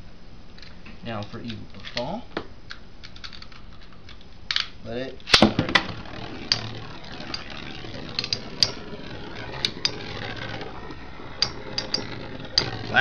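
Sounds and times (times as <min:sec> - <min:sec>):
spinning tops clashing clicks: 0:05.3 - 0:13.0
spinning tops whirring: 0:05.3 - 0:13.0.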